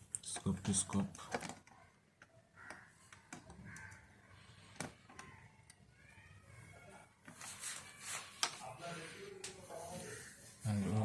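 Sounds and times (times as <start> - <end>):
faint calls: 2.3 - 7.1.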